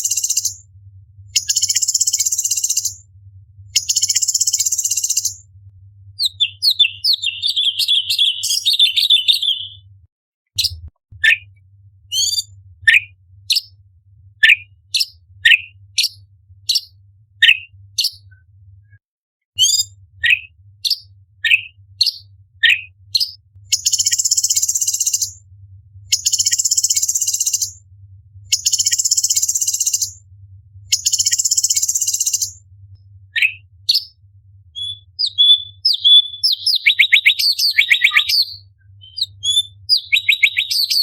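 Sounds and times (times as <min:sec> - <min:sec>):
bird singing: 0:00.0 - 0:00.6, 0:01.4 - 0:03.0, 0:03.8 - 0:05.4, 0:06.2 - 0:09.9, 0:12.1 - 0:13.8, 0:14.4 - 0:18.3, 0:19.6 - 0:25.4, 0:26.1 - 0:27.8, 0:28.5 - 0:30.2, 0:30.9 - 0:32.6, 0:33.4 - 0:34.2, 0:34.8 - 0:41.0
buzzy bird chatter: 0:00.0 - 0:00.6, 0:06.2 - 0:09.8, 0:34.8 - 0:41.0
faint low hum: 0:00.0 - 0:08.3, 0:23.5 - 0:36.6.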